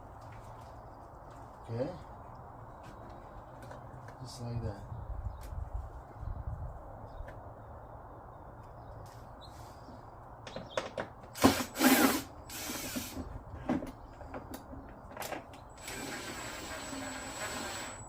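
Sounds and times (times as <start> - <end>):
power screwdriver whirring: 11.4 - 13.2, 15.8 - 18.0.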